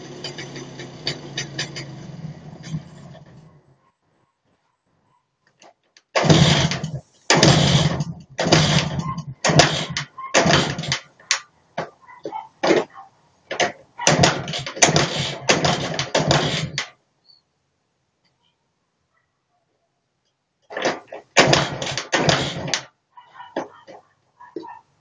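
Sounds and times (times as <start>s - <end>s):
two-stroke engine being kicked over: 0.0s - 3.4s, 6.1s - 12.0s, 12.6s - 17.0s, 20.7s - 22.9s.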